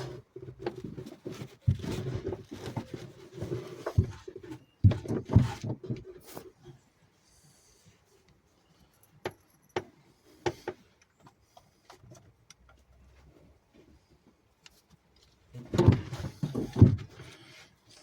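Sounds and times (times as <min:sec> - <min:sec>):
rattling and knocking: 0:15.6 - 0:17.3.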